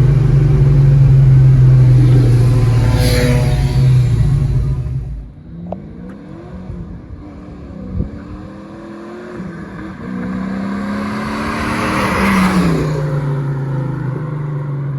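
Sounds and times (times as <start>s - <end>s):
car engine accelerating: 0.0s - 14.9s
car passing by: 1.9s - 5.2s, 8.4s - 14.9s.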